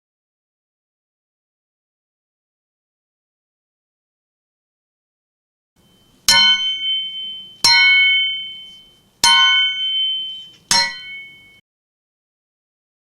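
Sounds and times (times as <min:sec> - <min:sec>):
sharp metal strikes with ringing: 0:06.2 - 0:11.6.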